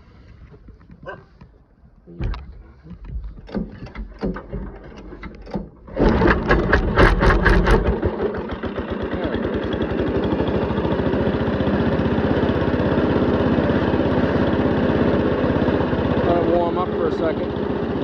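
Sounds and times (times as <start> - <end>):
small engine pull-started: 2.4 - 18.0
small engine running: 5.9 - 18.0.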